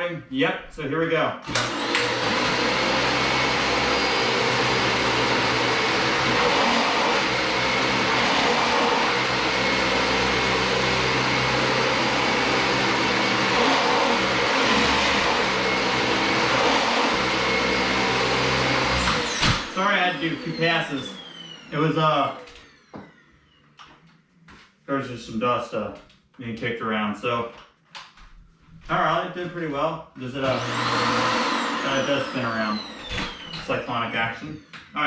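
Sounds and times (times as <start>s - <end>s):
upright vacuum cleaner running: 1.4s - 23.6s, 30.4s - 35.0s.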